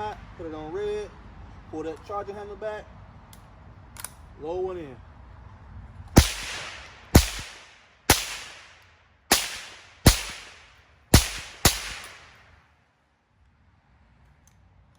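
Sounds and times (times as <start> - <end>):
rifle shots cracking: 6.2 - 12.6.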